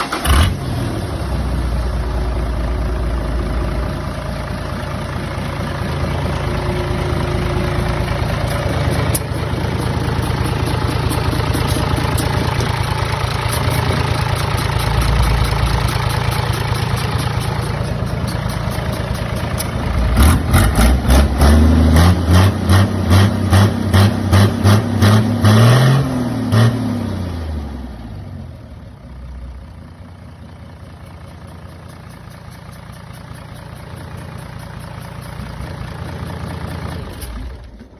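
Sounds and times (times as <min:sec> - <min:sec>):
diesel engine revving: 0:00.0 - 0:28.7.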